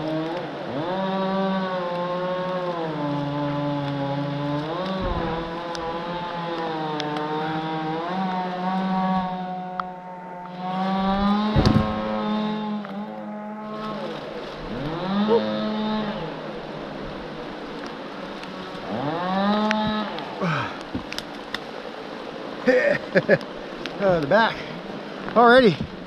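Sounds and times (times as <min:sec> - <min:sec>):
chainsaw cutting at high revs: 0:00.0 - 0:16.4, 0:18.8 - 0:21.0
loud thud: 0:05.0 - 0:05.5, 0:11.5 - 0:12.1.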